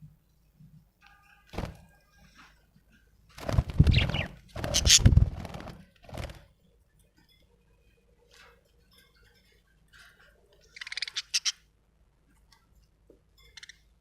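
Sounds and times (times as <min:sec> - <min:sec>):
loud rustling thumping bursts: 0:01.6 - 0:01.9, 0:03.4 - 0:06.5
budgie chirping: 0:03.9 - 0:05.2, 0:10.7 - 0:11.6, 0:13.4 - 0:13.9.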